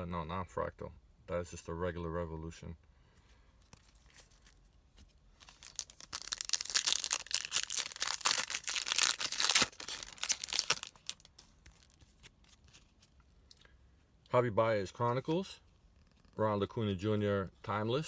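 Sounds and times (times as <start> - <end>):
foil wrapper tearing and crinkling: 5.4 - 12.8.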